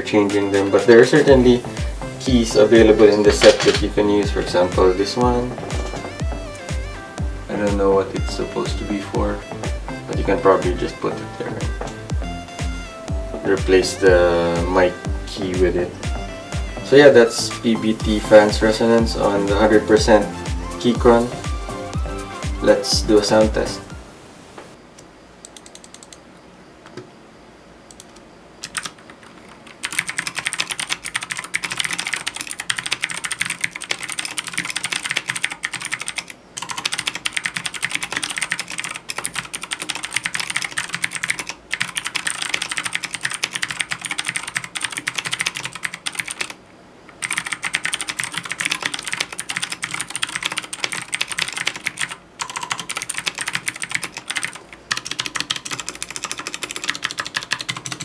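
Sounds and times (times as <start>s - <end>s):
fast typing on mechanical keyboard: 28.6s - 46.6s, 47.2s - 58.0s.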